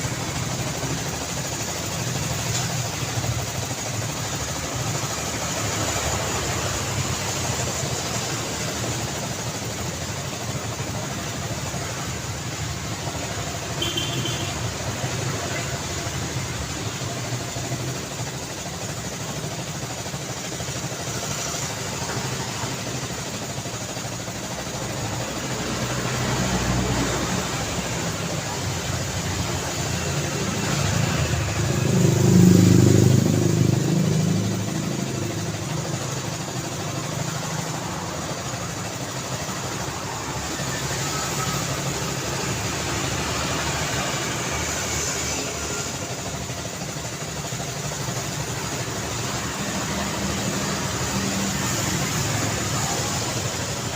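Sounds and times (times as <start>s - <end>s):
road traffic hum: 0.0s - 53.9s
vehicle passing close: 25.2s - 46.2s.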